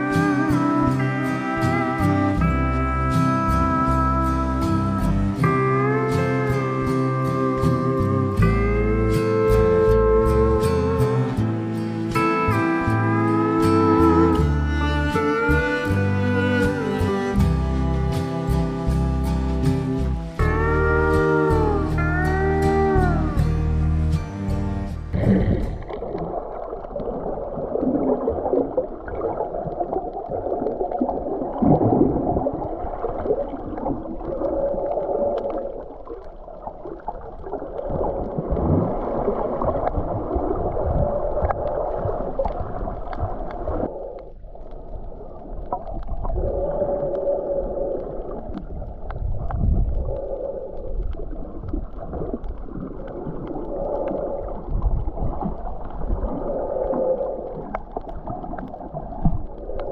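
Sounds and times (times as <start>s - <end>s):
underwater water churning and gurgling: 25.1s - 59.9s.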